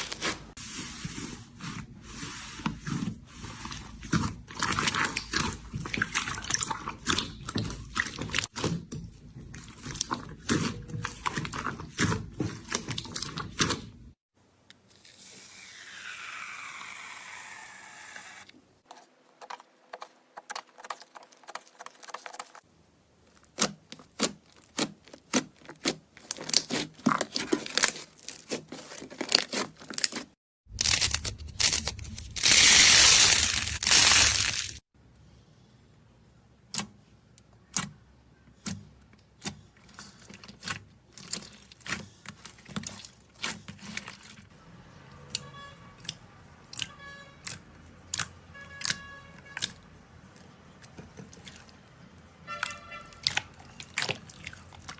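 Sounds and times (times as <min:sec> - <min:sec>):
slime crunching: 0:00.0 - 0:08.8, 0:09.4 - 0:14.0, 0:23.3 - 0:34.8, 0:38.6 - 0:44.5, 0:52.5 - 0:54.9
slime crackling: 0:23.4 - 0:34.8.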